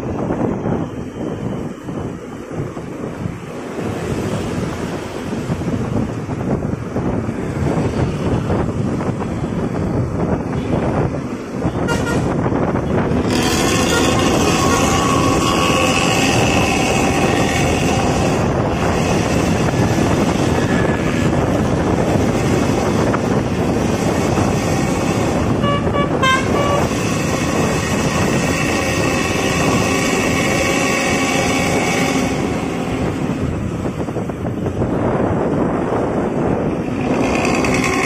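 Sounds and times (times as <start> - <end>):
bus road noise: 0.0 - 38.0
horn toots: 11.7 - 12.5, 13.2 - 21.5, 24.3 - 33.2.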